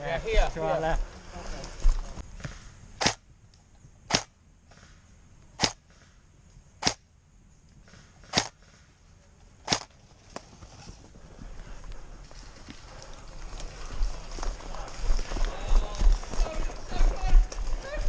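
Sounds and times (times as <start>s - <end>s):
airsoft gun shots: 2.4s - 3.2s, 4.1s - 5.0s, 5.6s - 6.1s, 6.8s - 7.0s, 7.9s - 8.8s, 9.7s - 9.9s.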